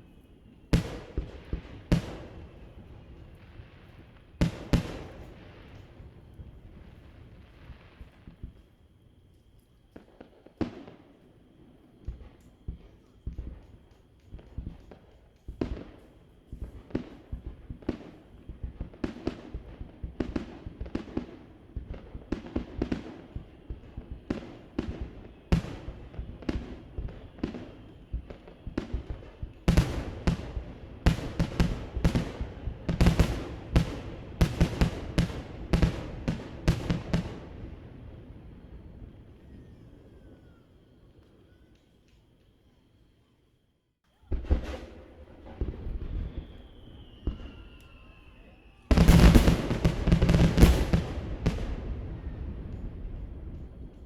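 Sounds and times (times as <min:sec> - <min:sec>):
fireworks bursting: 0:00.0 - 0:08.7, 0:09.9 - 0:40.3, 0:44.2 - 0:54.0.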